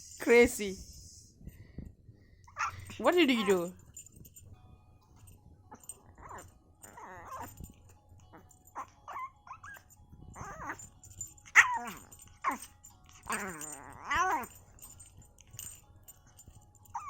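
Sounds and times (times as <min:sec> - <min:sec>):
dog whining and whimpering: 0:05.8 - 0:07.7, 0:08.3 - 0:15.0.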